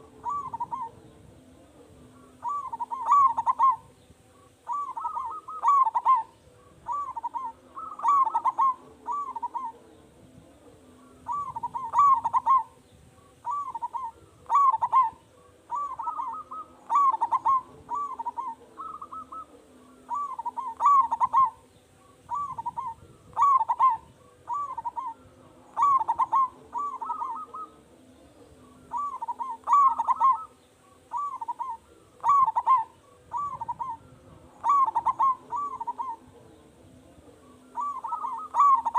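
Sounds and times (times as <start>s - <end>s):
dove cooing: 0.0s - 38.9s.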